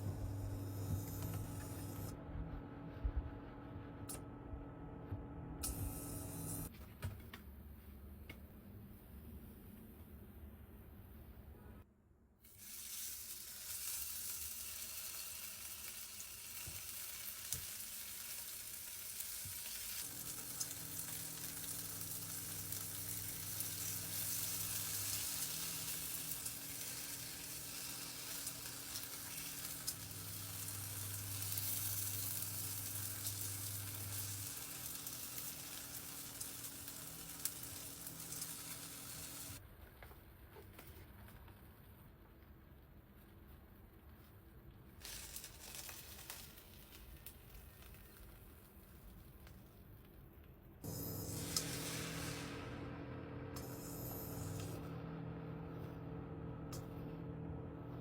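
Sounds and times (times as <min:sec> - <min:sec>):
steady low hum: 0:00.0 - 0:06.7, 0:50.8 - 0:58.0
food sizzling in hot oil: 0:12.5 - 0:39.6, 0:45.0 - 0:47.9, 0:50.9 - 0:52.8.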